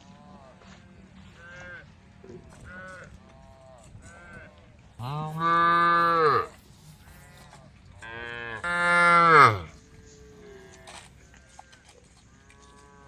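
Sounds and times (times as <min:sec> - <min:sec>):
cow mooing: 0:04.0 - 0:10.9.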